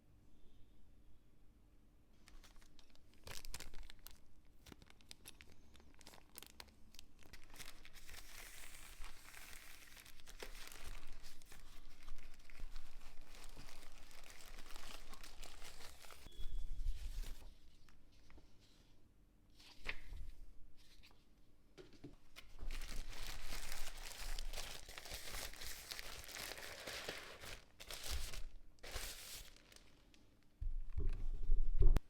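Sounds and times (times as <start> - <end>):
wrapper crinkling and tearing: 2.2 - 16.3, 22.4 - 30.4.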